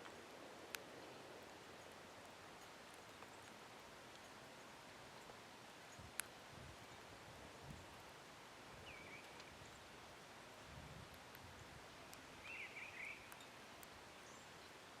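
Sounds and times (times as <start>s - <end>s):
outdoor background hiss: 0.0s - 15.0s
songbird calling: 8.8s - 9.8s, 12.0s - 14.8s.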